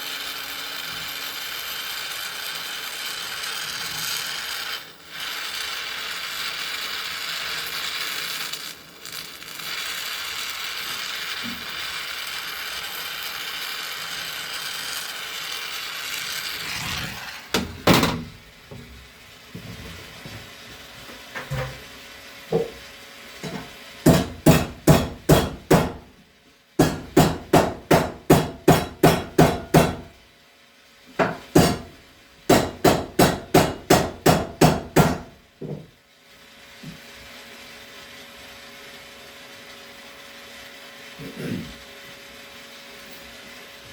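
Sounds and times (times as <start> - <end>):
gas torch hissing: 0.0 - 26.2
hammer striking metal: 24.0 - 26.0, 26.8 - 30.1, 31.2 - 35.4.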